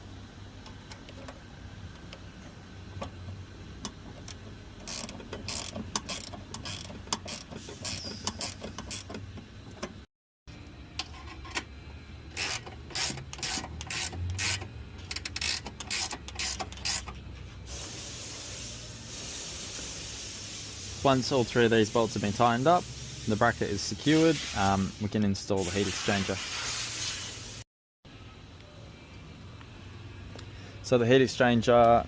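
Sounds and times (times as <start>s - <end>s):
socket ratchet clicking: 3.9s - 9.2s, 12.3s - 17.2s.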